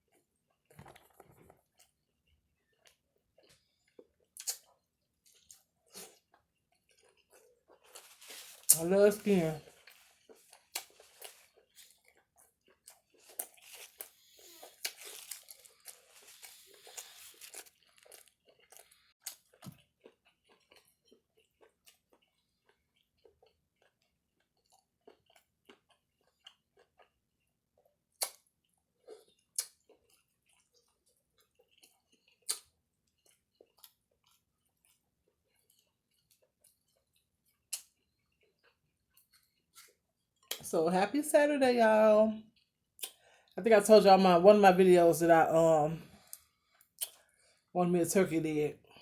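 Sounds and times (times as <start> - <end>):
chewing and crunching skin: 0.0 - 8.8, 9.6 - 40.6, 42.5 - 43.6, 46.1 - 47.7
mouth clicks and smacks: 4.4 - 4.7, 28.2 - 28.4, 47.0 - 47.2.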